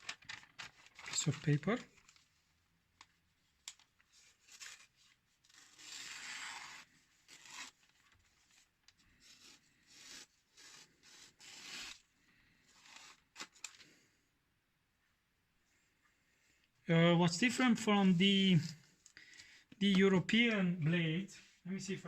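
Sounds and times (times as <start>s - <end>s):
hand plane blade cutting paper: 9.3s - 12.0s.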